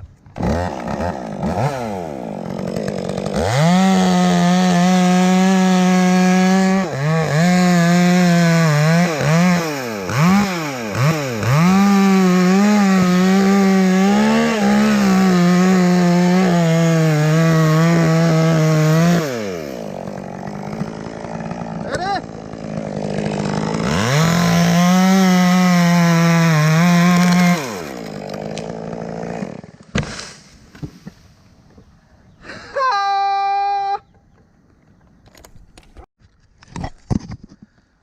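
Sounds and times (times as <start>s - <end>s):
chainsaw cutting wood: 0.0s - 31.2s.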